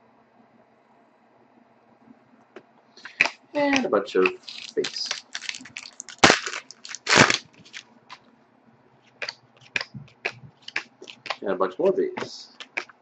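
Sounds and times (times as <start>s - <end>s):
cards snapping and clicking: 3.0s - 8.2s, 9.1s - 13.0s.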